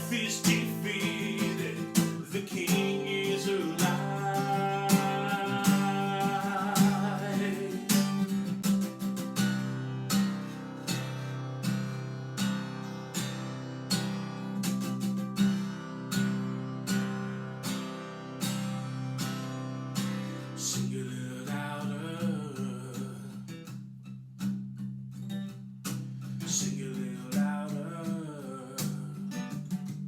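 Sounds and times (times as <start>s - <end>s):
acoustic guitar strumming: 0.0s - 30.0s.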